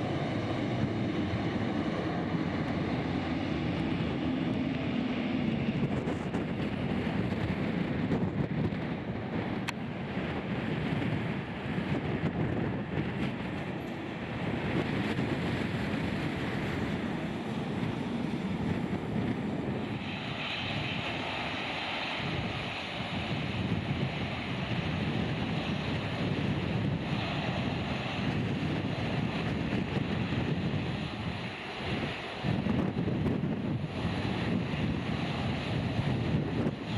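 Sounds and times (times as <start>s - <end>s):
jet engine during takeoff: 0.0s - 36.9s
wind gusting on microphone: 0.0s - 36.9s.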